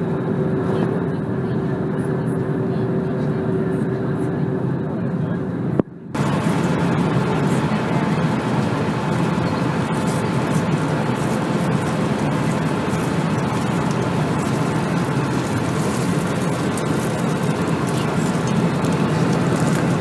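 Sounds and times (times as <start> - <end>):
airliner cabin noise: 0.0 - 20.0
faint steady tones: 6.2 - 20.0.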